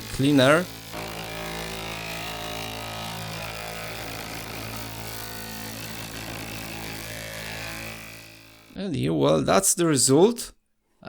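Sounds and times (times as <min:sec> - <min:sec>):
ultrasonic cleaner buzzing: 0:00.0 - 0:08.8.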